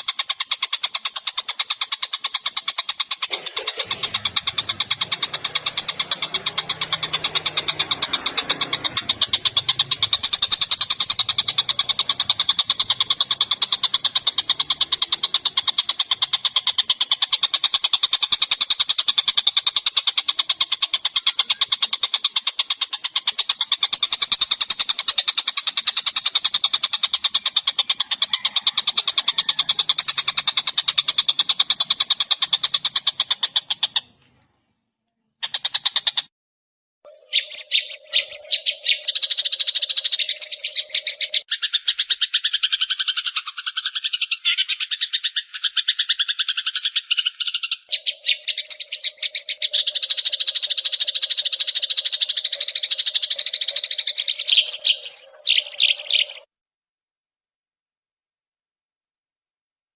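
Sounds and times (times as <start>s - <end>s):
songbird trilling: 0.0s - 34.3s, 35.4s - 36.3s, 37.1s - 56.5s.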